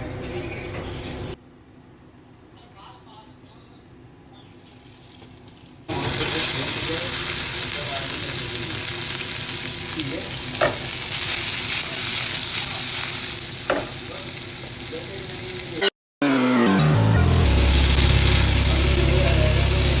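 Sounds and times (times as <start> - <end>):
food sizzling in hot oil: 5.9 - 15.9, 17.4 - 20.0.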